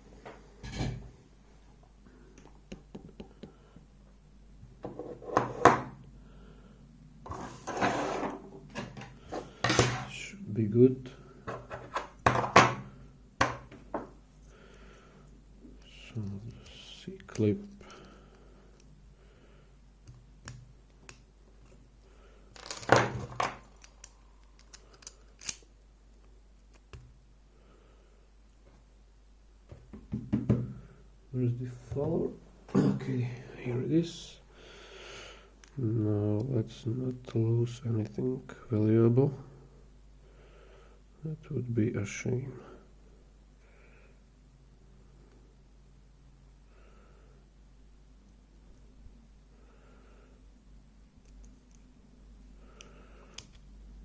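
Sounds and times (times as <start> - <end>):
lock and tools clicking: 22.6 - 25.7.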